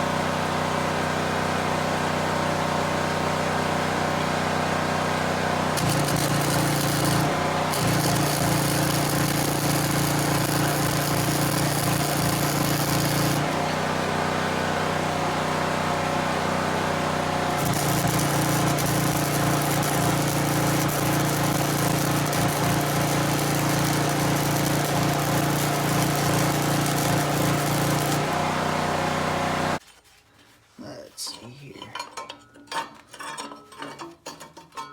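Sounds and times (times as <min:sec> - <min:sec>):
generator engine running: 0:00.1 - 0:29.8
welding arc crackling: 0:05.7 - 0:13.8, 0:17.4 - 0:29.8.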